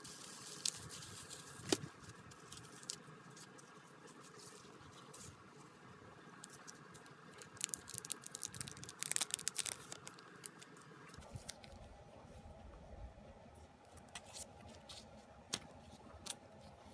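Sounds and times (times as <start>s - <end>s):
packaging clicks and rustles: 7.4s - 11.8s.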